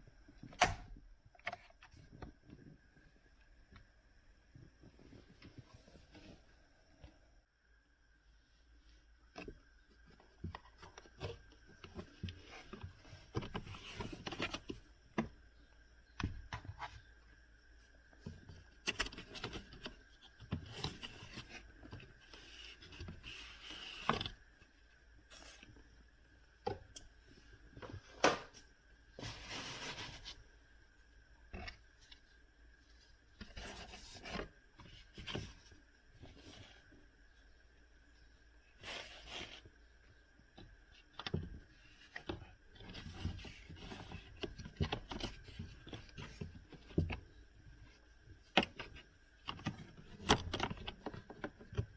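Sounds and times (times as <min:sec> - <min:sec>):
rubbing and scraping: 0:29.2 - 0:30.4.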